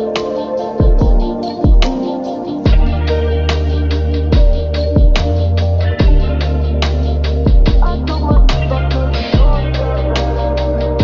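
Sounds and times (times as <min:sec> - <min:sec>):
electronic music: 0:00.0 - 0:11.0
steady sharp beat: 0:00.0 - 0:11.0
heavy bass sliding down: 0:02.7 - 0:11.0.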